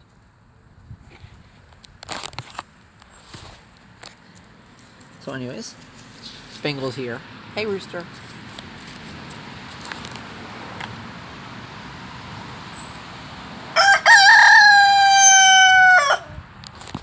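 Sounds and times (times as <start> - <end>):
rooster crowing: 13.7 - 16.4.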